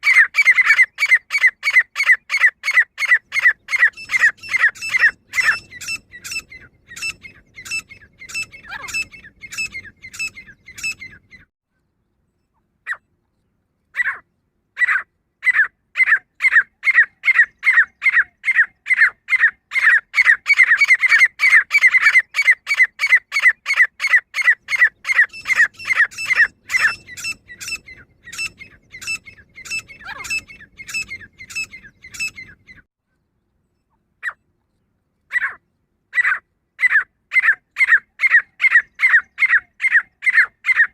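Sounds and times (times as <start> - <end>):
francolin calling: 0.0 - 11.5, 14.8 - 32.9.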